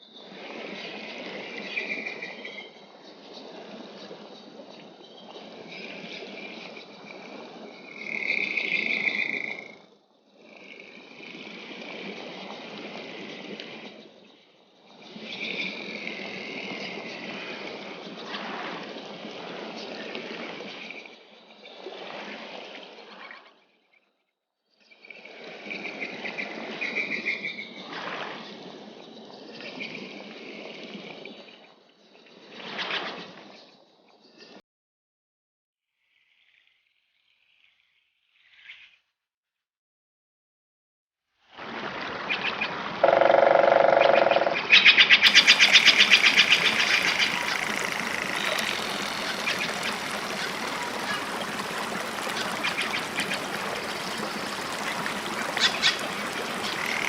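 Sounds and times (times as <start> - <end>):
rushing water: 45.3 - 57.0.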